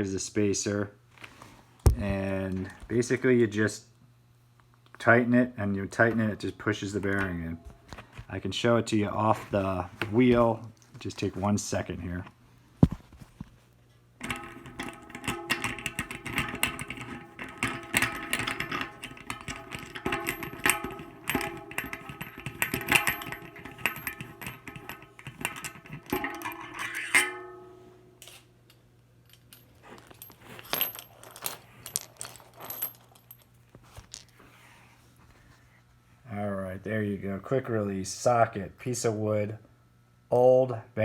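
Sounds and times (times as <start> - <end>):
metal parts jangling and clicking: 14.2 - 27.4, 28.2 - 34.3.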